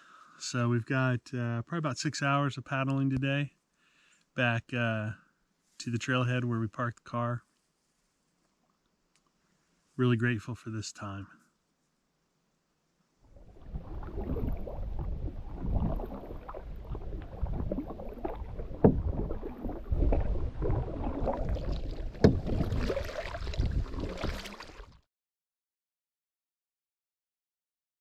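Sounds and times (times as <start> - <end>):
paddle splashing in water: 13.3 - 25.0.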